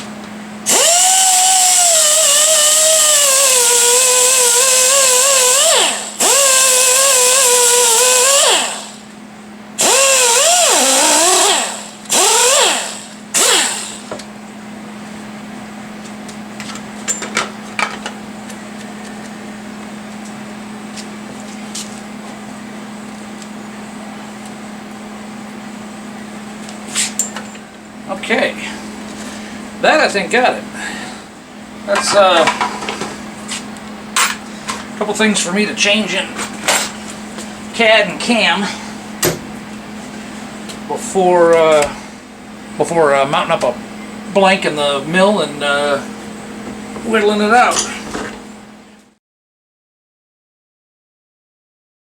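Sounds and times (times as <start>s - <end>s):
power tool motor whine: 0.6s - 9.1s, 9.8s - 14.2s.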